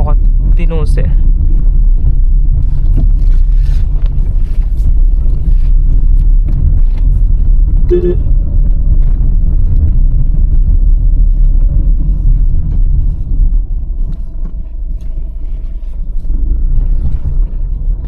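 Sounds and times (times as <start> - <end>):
car driving rumble: 0.0 - 18.0
short pitched sound: 7.9 - 8.3.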